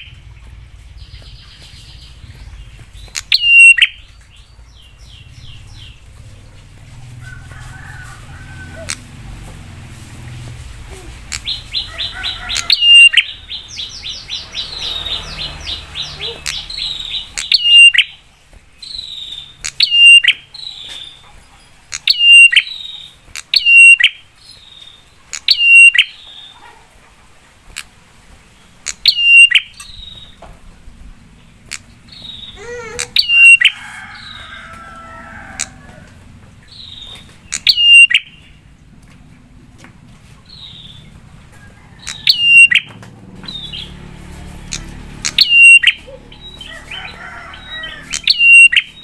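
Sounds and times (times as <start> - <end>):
bird calling high notes: 3.3 - 4.0, 11.3 - 13.6, 15.2 - 18.1, 32.3 - 34.5, 37.5 - 38.5, 42.1 - 42.9, 45.3 - 46.7, 47.7 - 49.0.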